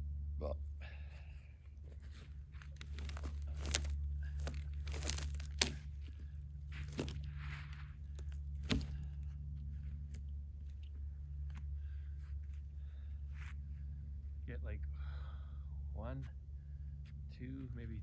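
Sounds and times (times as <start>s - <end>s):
steady low hum: 0.0s - 18.0s
wood and bark crunching: 1.2s - 14.1s.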